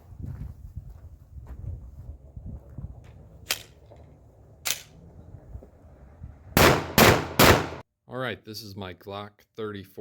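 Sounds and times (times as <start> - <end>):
low rumble on microphone: 0.0 - 6.6.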